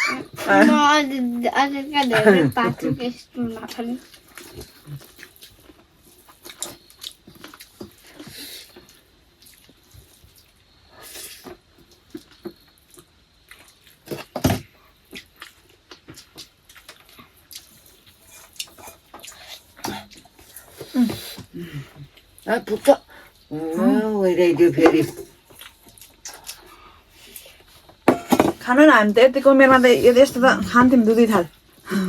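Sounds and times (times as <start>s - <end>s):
mouths chewing and smacking: 3.6s - 23.5s, 25.2s - 28.0s
loud knock: 28.1s - 28.6s.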